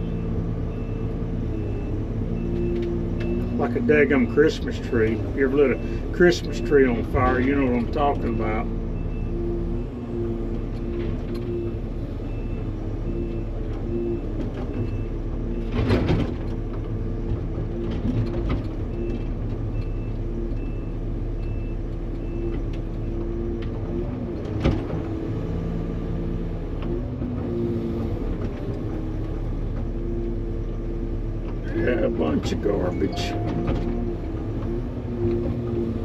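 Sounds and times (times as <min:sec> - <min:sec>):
reversing alarm beeping: 0:32.9 - 0:34.6.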